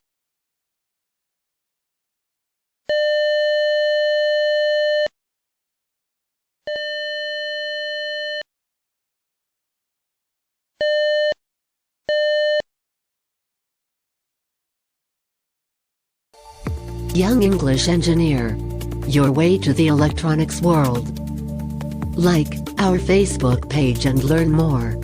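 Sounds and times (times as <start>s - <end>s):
doorbell buzzing: 6.7s - 8.4s.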